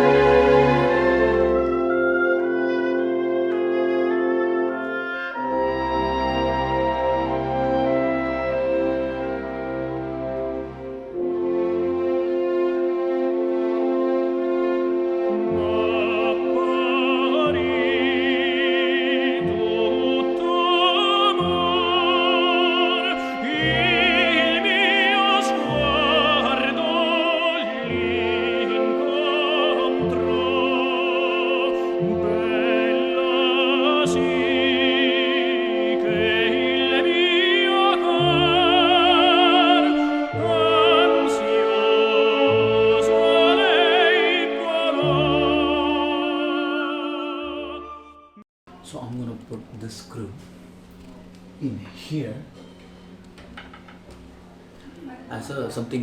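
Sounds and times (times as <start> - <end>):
orchestral accompaniment: 0.0 - 48.4
operatic voice singing: 15.3 - 48.2.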